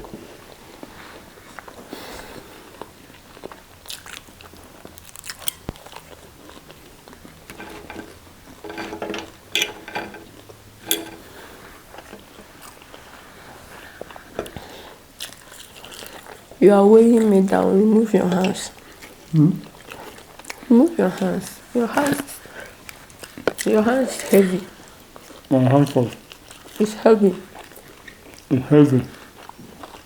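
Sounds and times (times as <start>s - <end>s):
person chewing food: 2.6s - 8.7s, 10.1s - 20.7s, 22.2s - 23.8s, 24.6s - 26.8s, 27.4s - 28.5s, 29.1s - 30.0s.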